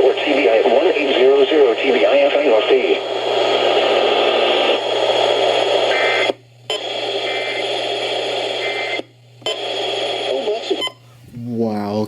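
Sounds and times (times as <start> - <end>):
radio static hiss: 0.0 - 12.0.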